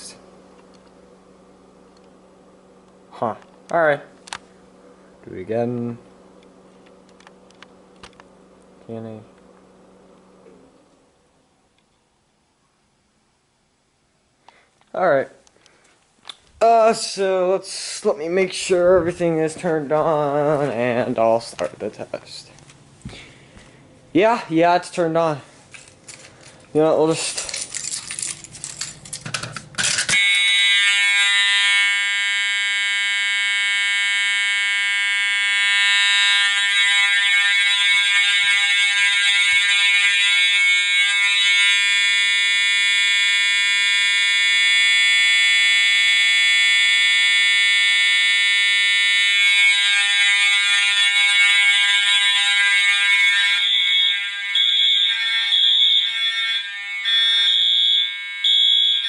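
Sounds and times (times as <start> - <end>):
fire alarm horns blaring: 0.0 - 0.3, 29.9 - 59.0
sharp clicks and rattles: 27.3 - 30.2.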